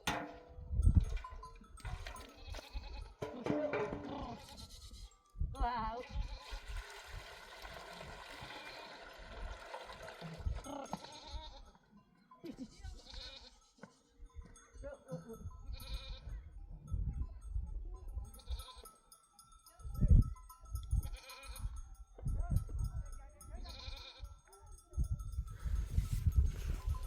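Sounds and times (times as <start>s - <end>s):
flock bleating: 2.4s - 5.2s, 10.6s - 11.8s, 12.4s - 14.0s.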